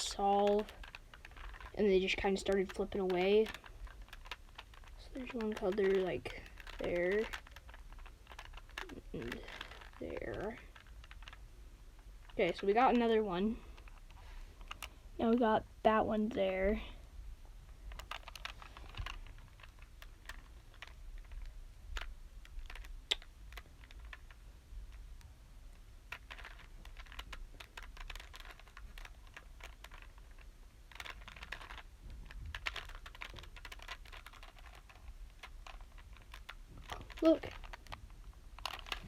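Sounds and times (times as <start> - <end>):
puzzle cube clicking as twisted: 0.0 - 15.0, 17.8 - 39.0.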